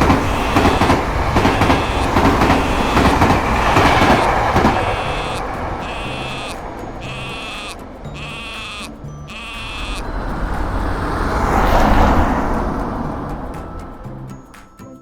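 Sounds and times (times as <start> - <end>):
level crossing warning signal: 0.0 - 10.2
passing train rushing: 0.0 - 14.5.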